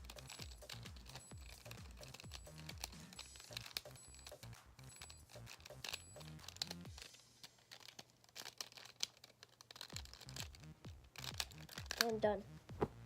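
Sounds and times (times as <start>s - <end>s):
plastic puzzle clicking and rattling: 0.0s - 12.2s
cloth rustling: 5.3s - 13.0s.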